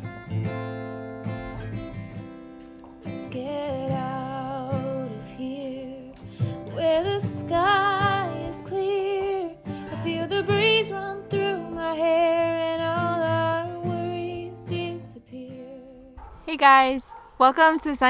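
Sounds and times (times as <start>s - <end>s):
guitar accompaniment: 0.0s - 16.4s
woman singing slow melody: 3.0s - 16.2s.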